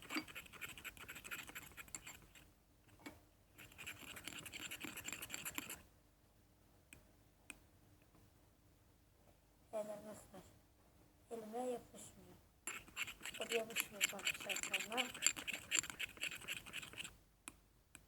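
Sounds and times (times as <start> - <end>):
faint scratchy rubbing: 12.7 - 17.2.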